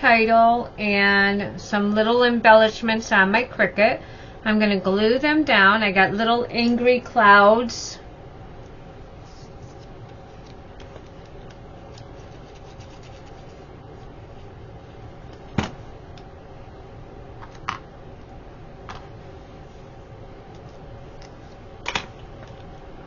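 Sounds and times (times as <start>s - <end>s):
steady hum: 0.0s - 23.0s
paper rubbing and ticks: 9.4s - 13.7s.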